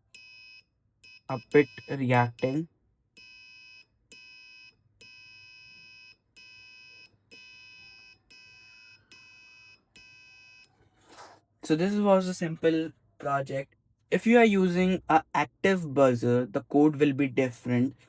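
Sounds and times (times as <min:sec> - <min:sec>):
buzzer beeps: 0:00.2 - 0:10.7.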